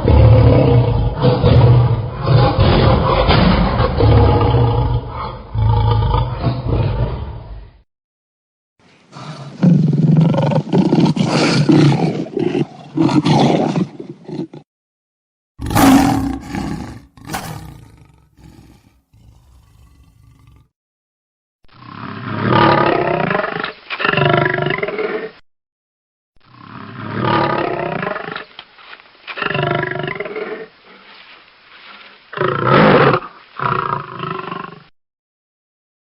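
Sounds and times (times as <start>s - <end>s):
lion roaring and growling: 0.0s - 7.6s, 15.6s - 20.7s.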